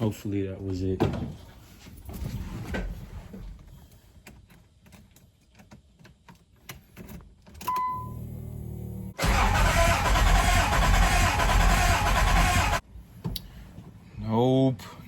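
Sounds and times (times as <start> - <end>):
keys and car controls clicking: 4.2 - 7.9.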